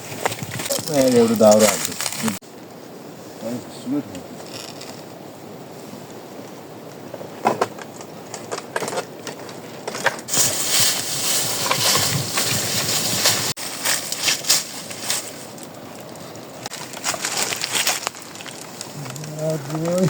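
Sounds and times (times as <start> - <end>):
wood crunching and rustling: 0.0 - 2.4, 7.1 - 20.0.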